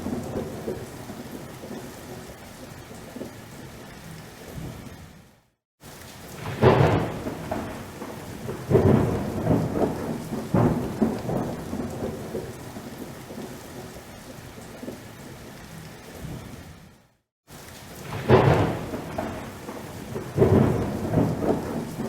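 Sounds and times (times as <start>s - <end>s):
thunder clap and rumbles: 0.0s - 2.3s, 6.3s - 14.0s, 18.0s - 22.0s
steady rain: 0.0s - 22.0s.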